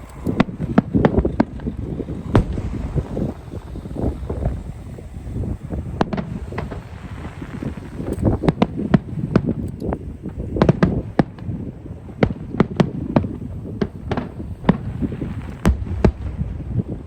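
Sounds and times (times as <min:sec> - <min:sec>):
low rumble: 0:00.0 - 0:09.5
firework bangs: 0:00.0 - 0:17.0.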